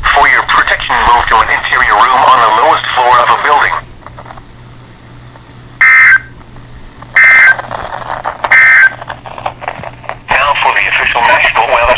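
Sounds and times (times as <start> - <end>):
harsh digital screeches: 5.8 - 6.3, 7.2 - 7.6, 8.5 - 8.9.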